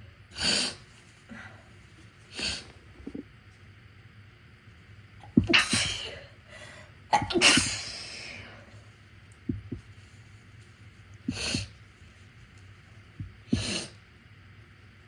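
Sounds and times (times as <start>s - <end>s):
person sneezing: 5.4s - 6.2s, 7.2s - 8.3s.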